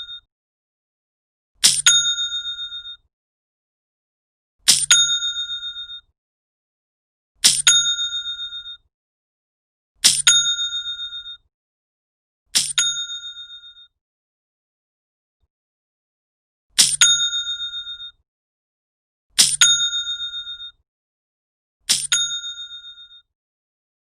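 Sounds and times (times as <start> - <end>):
cash register sound effect: 1.6 - 2.4, 4.7 - 5.2, 7.4 - 8.0, 10.0 - 10.6, 12.6 - 13.3, 16.8 - 18.0, 19.4 - 20.6, 21.9 - 23.2.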